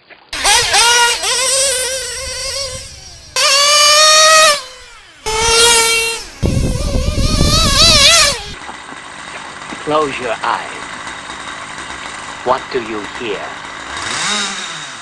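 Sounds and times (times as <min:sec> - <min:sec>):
small rc car engine revving: 0:00.4 - 0:08.6, 0:13.6 - 0:15.0.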